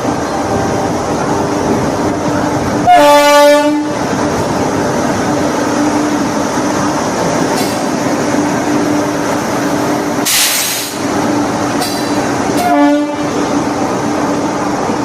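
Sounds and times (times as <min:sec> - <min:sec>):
train rolling: 0:00.0 - 0:15.0
sharp hiss: 0:10.2 - 0:11.1.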